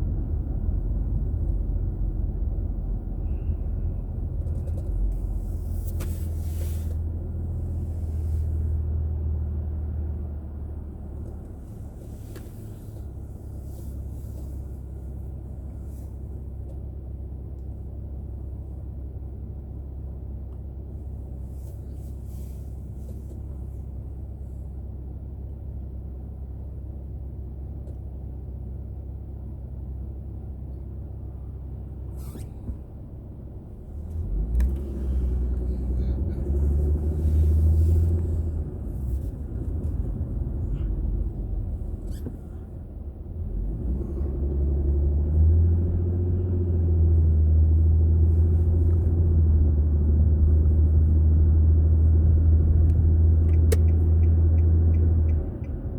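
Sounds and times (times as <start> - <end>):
road noise inside car: 0.0 - 55.9
car engine accelerating: 33.7 - 55.9.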